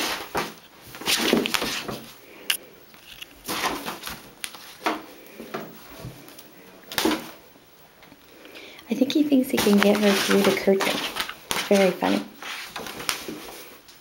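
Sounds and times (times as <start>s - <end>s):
cats scuffling in a bathtub: 0.0s - 2.2s, 3.4s - 7.4s, 8.9s - 13.8s.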